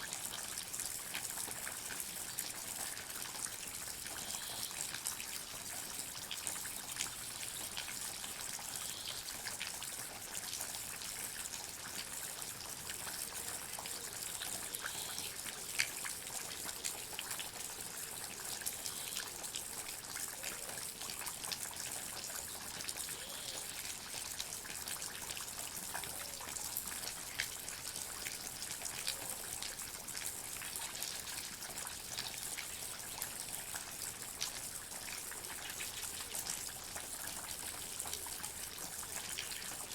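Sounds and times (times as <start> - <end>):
water dripping and trickling: 0.0 - 39.9.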